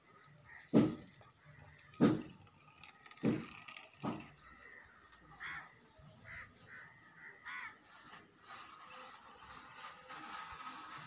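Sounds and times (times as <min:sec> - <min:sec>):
sharp thumps: 0:00.6 - 0:04.4
crow cawing: 0:04.5 - 0:07.8.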